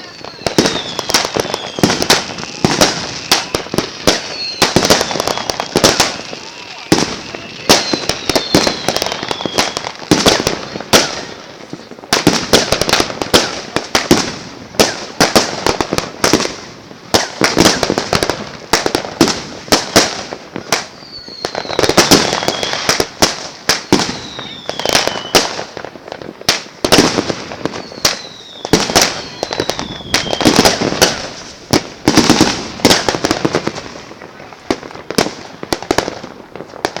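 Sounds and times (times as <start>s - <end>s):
firework whistles gliding down: 0.0s - 11.5s, 17.1s - 25.8s, 26.5s - 37.0s
fireworks bangs and crackles: 0.0s - 37.0s.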